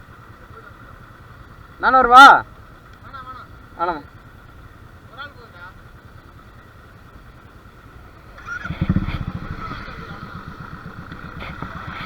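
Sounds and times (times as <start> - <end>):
motorcycle engine starting and idling: 2.7 - 12.0.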